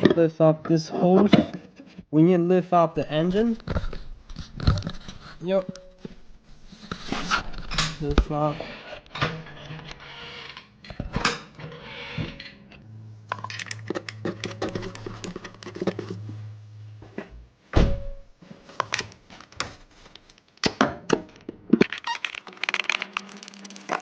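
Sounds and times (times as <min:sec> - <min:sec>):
low steady hum: 0:12.4 - 0:18.6.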